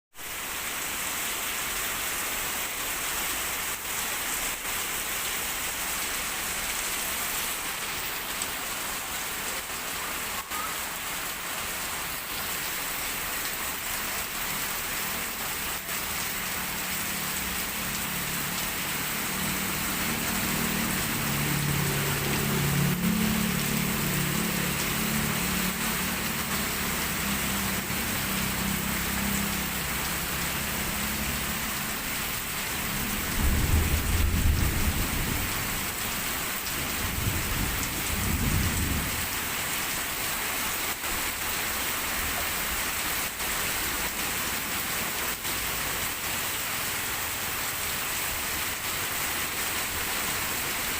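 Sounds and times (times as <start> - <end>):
heavy rain pouring: 0.1 - 50.9
low drone: 19.4 - 28.0.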